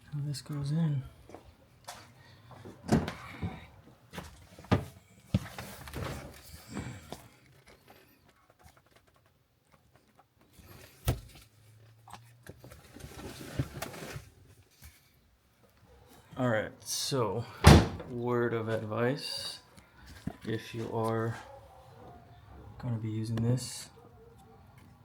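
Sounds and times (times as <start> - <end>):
scraping and rustling: 4.2 - 15.2.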